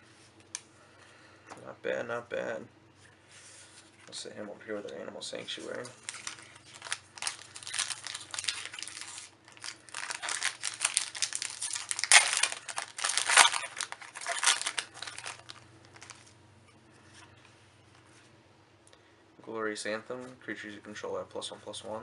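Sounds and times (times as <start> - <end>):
foil wrapper crinkling and tearing: 5.8 - 16.3.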